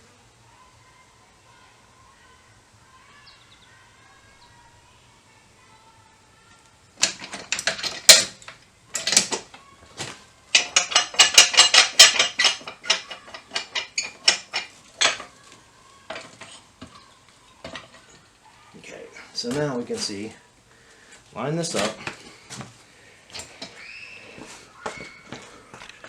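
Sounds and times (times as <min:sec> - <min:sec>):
metal tools clanking: 0:07.0 - 0:09.6, 0:10.5 - 0:15.4, 0:16.0 - 0:18.2, 0:21.7 - 0:22.2, 0:23.3 - 0:23.8.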